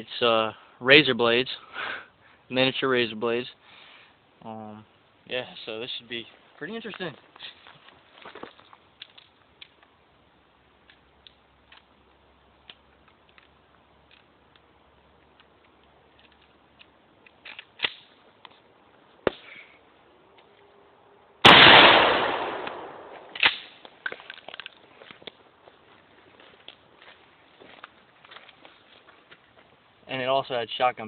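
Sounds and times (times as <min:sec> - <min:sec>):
shotgun shot: 0:21.4 - 0:23.8.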